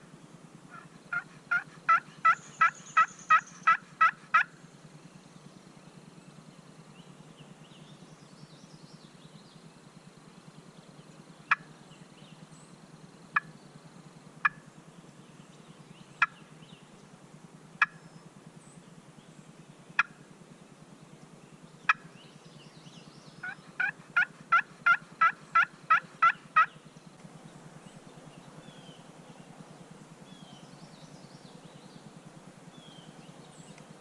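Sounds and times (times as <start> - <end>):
turkey call clucks: 0.7 - 4.5, 17.8 - 18.0, 20.0 - 20.2, 21.9 - 22.1, 23.4 - 26.8
turkey call yelps: 0.7 - 4.5, 23.4 - 26.7.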